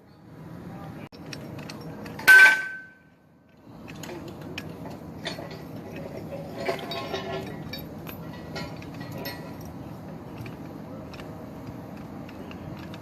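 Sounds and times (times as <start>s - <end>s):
light clinks and knocks: 1.2s - 13.0s
loud metallic clang: 2.2s - 3.1s.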